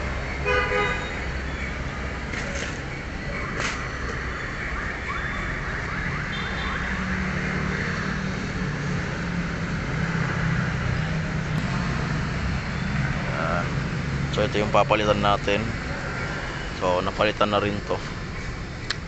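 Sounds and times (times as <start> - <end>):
traffic noise: 0.0 - 19.0.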